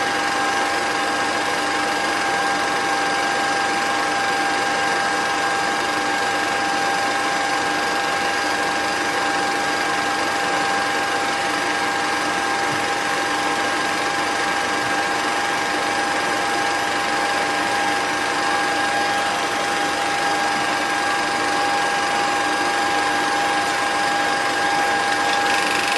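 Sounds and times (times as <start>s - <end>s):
small motor whining: 17.3s - 25.9s.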